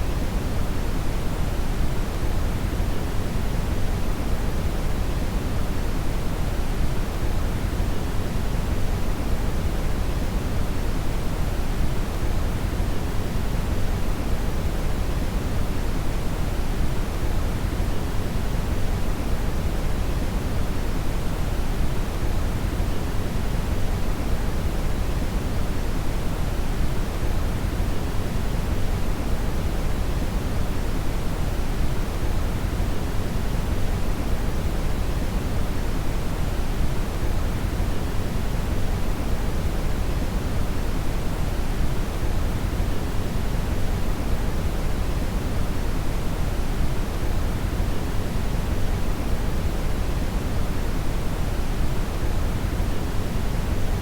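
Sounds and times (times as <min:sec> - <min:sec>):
brown noise hiss: 0:00.0 - 0:54.0.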